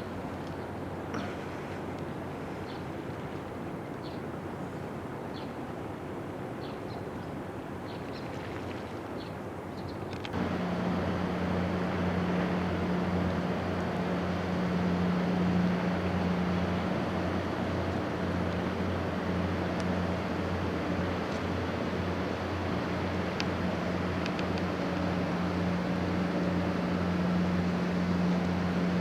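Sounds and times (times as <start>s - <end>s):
harbour noise: 0.0s - 29.0s
wind: 0.0s - 29.0s
ship horn long low blast: 10.4s - 29.0s.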